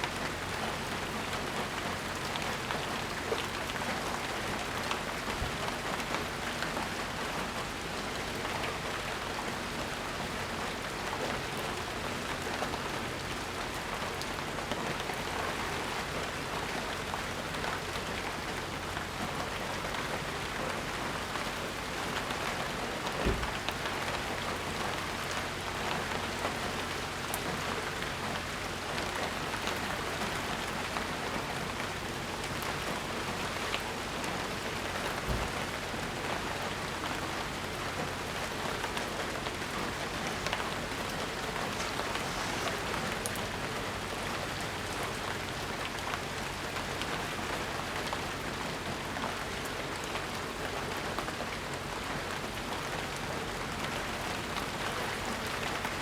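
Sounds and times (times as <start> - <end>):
rain pattering on surfaces: 0.0 - 56.0
dull low thump: 23.2 - 23.6, 35.3 - 35.6.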